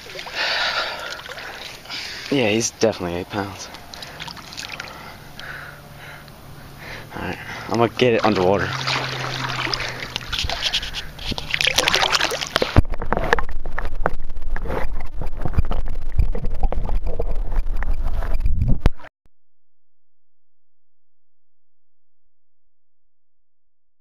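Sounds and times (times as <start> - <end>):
water splashing and sloshing: 0.0 - 18.3.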